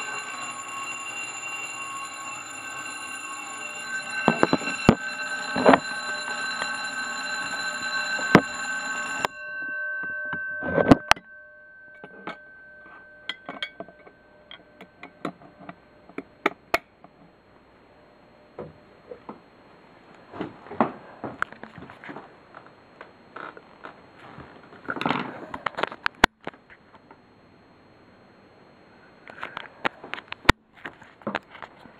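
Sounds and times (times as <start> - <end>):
fire alarm bells ringing: 0.0 - 16.1.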